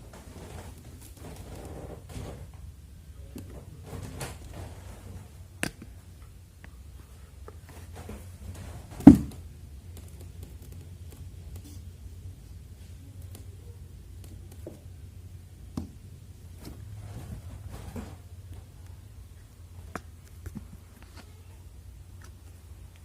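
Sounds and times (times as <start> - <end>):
air conditioner humming: 0.0 - 23.0
loud thump: 9.0 - 9.4.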